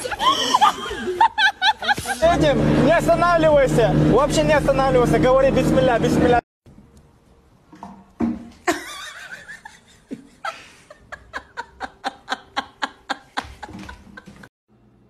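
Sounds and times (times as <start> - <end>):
person laughing: 0.0 - 2.6, 8.7 - 14.5.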